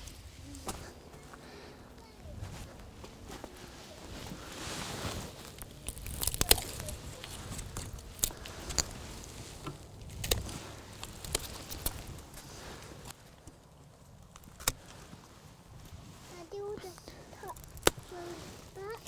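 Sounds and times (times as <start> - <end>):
dry stems rustling: 0.0 - 19.0
woody canes snapping: 5.1 - 13.2, 17.5 - 18.1.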